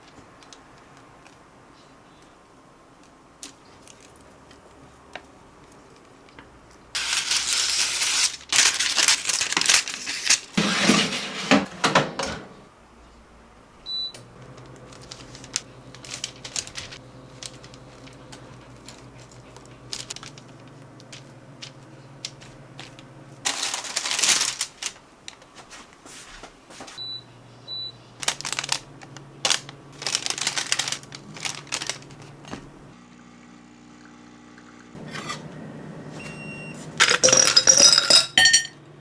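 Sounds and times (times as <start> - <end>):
low appliance hum: 0.0 - 39.0
utensils and packaging clattering: 7.0 - 12.6, 14.4 - 27.0, 28.2 - 32.9, 35.0 - 35.5, 36.2 - 38.8.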